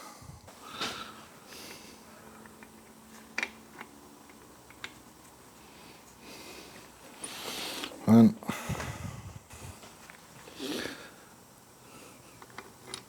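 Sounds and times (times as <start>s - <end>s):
small parts clicking: 2.3s - 5.4s, 12.4s - 13.0s.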